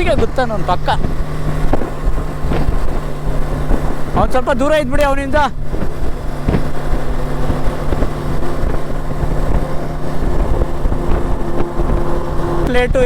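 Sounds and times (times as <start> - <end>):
motorcycle engine cruising: 0.0 - 13.0
wind rumble on microphone: 0.0 - 13.0.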